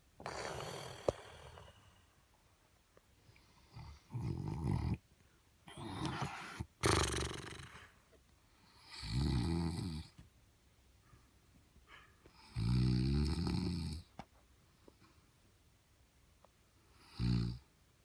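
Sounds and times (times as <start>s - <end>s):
man snoring: 0.2s - 1.9s, 5.8s - 7.8s, 8.9s - 10.1s, 12.6s - 14.0s, 17.1s - 17.6s.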